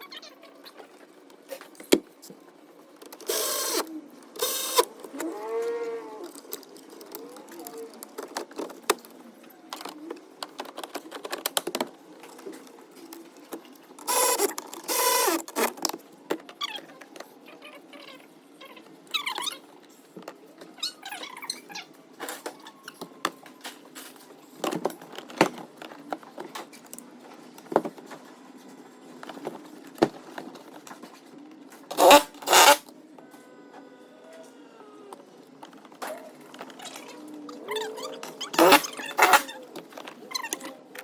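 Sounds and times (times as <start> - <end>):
harsh rasping bursts: 31.9 - 32.8, 38.5 - 39.5
creaking squeak: 31.9 - 32.9, 36.8 - 40.6.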